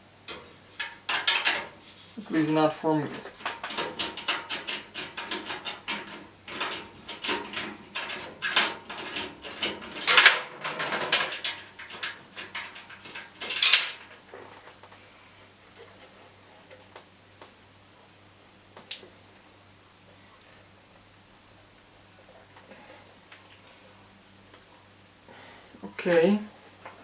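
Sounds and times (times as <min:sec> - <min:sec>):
computer parts clicking and rattling: 0:00.3 - 0:01.8, 0:03.1 - 0:14.9.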